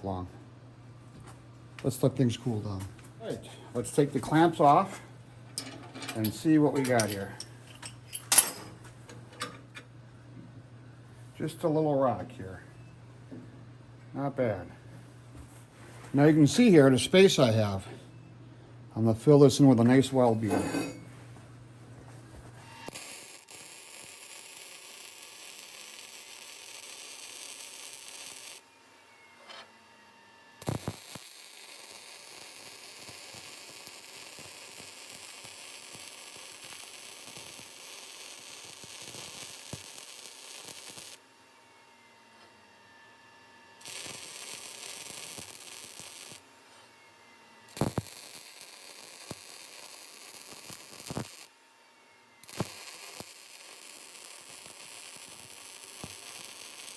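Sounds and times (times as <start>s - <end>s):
welder arc crackling and hissing: 3.8s - 4.9s, 22.6s - 28.7s, 30.5s - 41.3s, 43.8s - 46.9s, 47.7s - 51.6s, 52.4s - 56.9s
sharp welder clicks: 22.8s - 28.6s, 30.6s - 41.2s, 43.8s - 46.4s, 47.7s - 51.5s, 52.4s - 56.9s.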